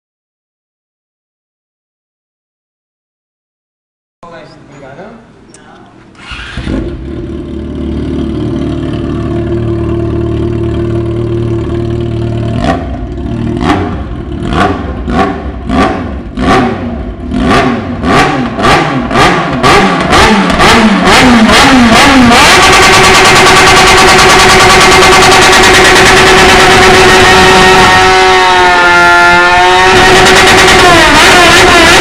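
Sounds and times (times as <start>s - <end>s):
motorcycle engine revving: 6.0s - 32.0s.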